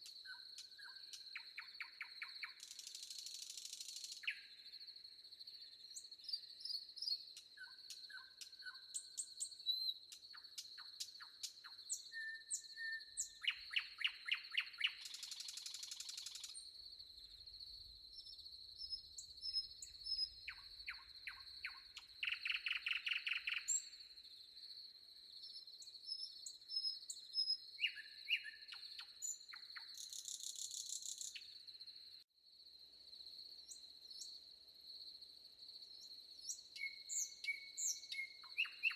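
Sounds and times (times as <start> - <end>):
songbirds chirping and whistling: 5.8 - 16.6, 18.1 - 24.0, 25.4 - 31.5, 36.4 - 38.9.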